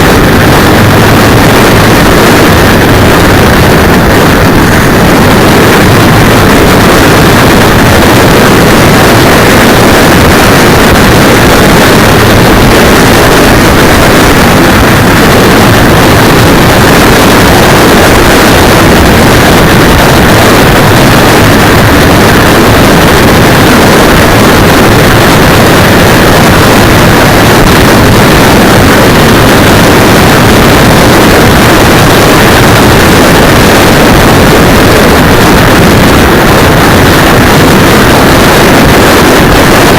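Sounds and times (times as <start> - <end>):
motorcycle running: 0.0 - 39.9
wind rush over microphone: 0.0 - 39.9.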